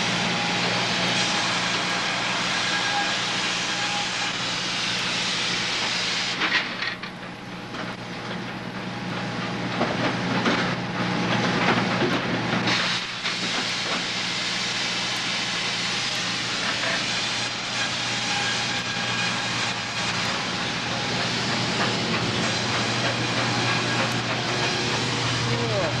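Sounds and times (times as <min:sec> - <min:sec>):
sawmill machinery hissing din: 0:00.0 - 0:07.0, 0:10.3 - 0:26.0
machinery knocks and clanks: 0:06.4 - 0:14.1, 0:19.6 - 0:26.0.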